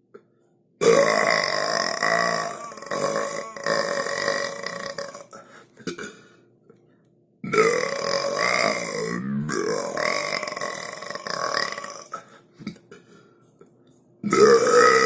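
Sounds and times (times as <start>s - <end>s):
long human burps: 0.8s - 6.3s.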